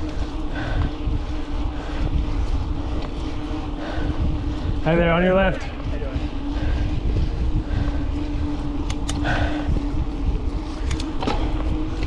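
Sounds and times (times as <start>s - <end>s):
steady hum: 0.0s - 12.0s
wind rumbling on microphone: 0.0s - 12.0s
sharp clicks: 8.8s - 9.2s.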